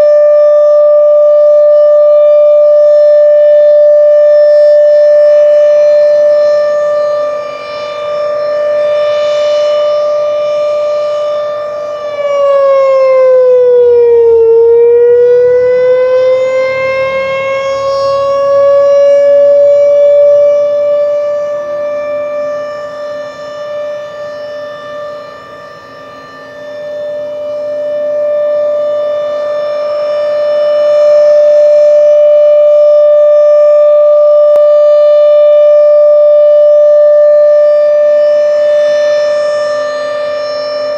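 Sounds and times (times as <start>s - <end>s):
rotating warning siren: 0.0s - 40.9s.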